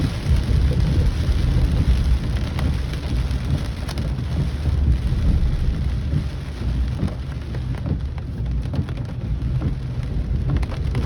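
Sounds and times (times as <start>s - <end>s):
deep continuous rumble: 0.0s - 11.0s
heavy rain: 0.0s - 11.0s.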